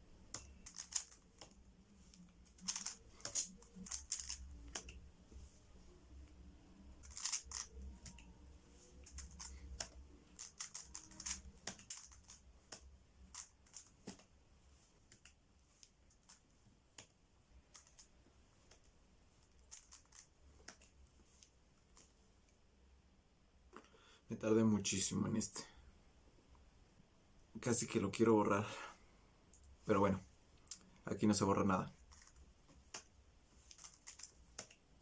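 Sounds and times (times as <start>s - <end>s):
puzzle cube clicking: 0.3s - 5.0s, 6.2s - 14.3s, 17.0s - 20.9s, 32.0s - 34.8s.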